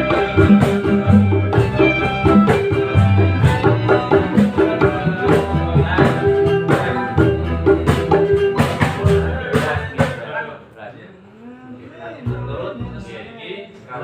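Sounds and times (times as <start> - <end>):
sustained pitched instruments: 0.0 - 9.8
hand drum beating: 0.0 - 10.2.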